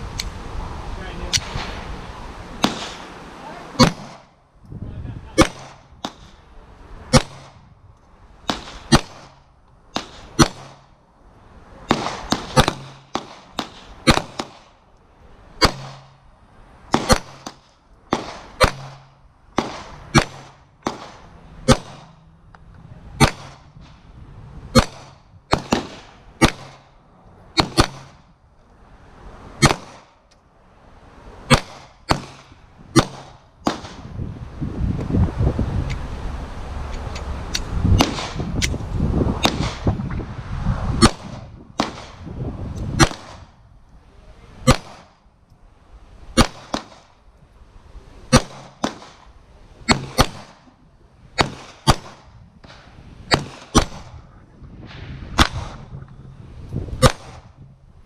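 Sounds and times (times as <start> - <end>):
pistol shots: 2.6 - 3.1, 3.8 - 4.4, 5.4 - 6.4, 7.1 - 7.6, 8.5 - 10.9, 11.9 - 14.7, 15.6 - 16.2, 16.9 - 22.3, 23.2 - 23.7, 24.7 - 26.9, 27.6 - 28.2, 29.6 - 30.2, 31.5 - 34.0, 38.0 - 38.4, 39.4 - 39.9, 41.0 - 42.2, 43.0 - 43.5, 44.6 - 45.2, 46.4 - 47.2, 48.3 - 50.6, 51.4 - 54.1, 55.4 - 55.9, 57.0 - 57.5.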